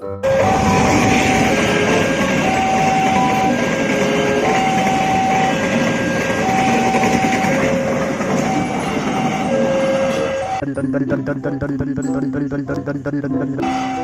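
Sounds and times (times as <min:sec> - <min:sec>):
train rumbling and rattling past: 0:00.2 - 0:10.6
two-tone crossing alarm: 0:00.2 - 0:10.9, 0:13.6 - 0:14.0.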